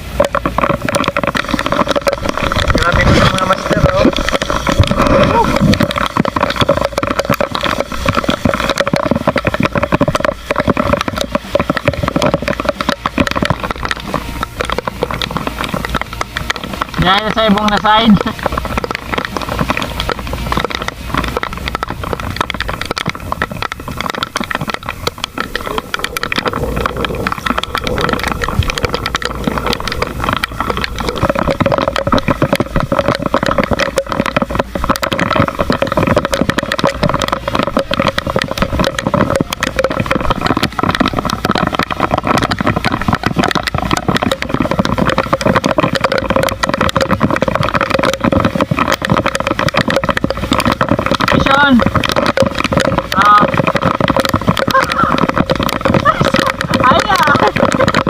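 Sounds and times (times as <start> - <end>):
crackling patter: 0.0 - 58.0
small boat engine running: 0.0 - 58.0.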